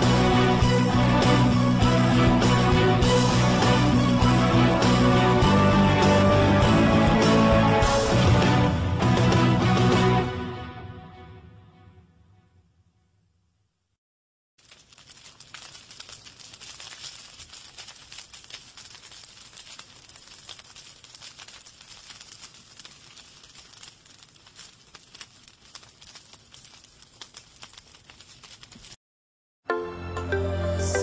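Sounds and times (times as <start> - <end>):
wood fire crackling: 0.0 - 10.3, 14.6 - 29.0.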